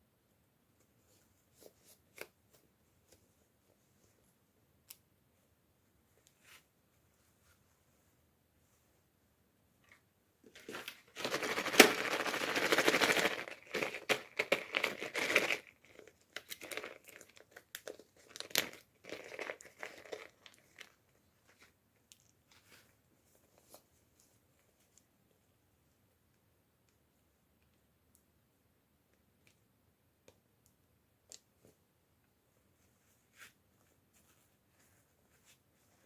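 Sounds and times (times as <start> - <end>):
packaging wrapper crinkling and tearing: 10.6 - 21.0.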